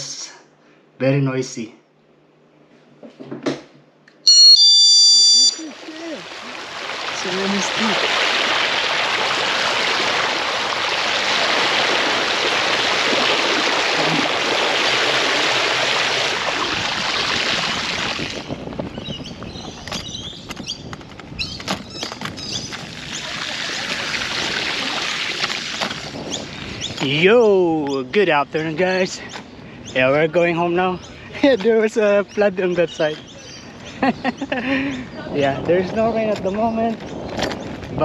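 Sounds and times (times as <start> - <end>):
flowing water rushing: 5.5 - 18.5, 22.8 - 26.3.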